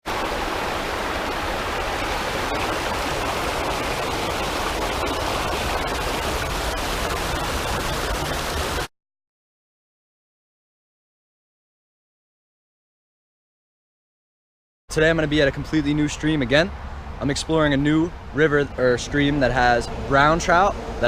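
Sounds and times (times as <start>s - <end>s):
stream rushing over rocks: 0.0s - 8.9s.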